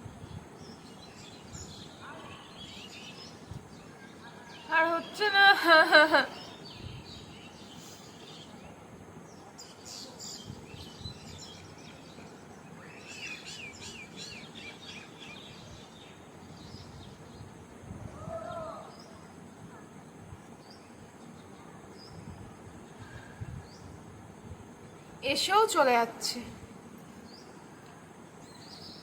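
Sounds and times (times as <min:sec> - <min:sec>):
low background hum: 0:00.0 - 0:29.0
birds chirping: 0:00.2 - 0:17.5, 0:28.4 - 0:29.0.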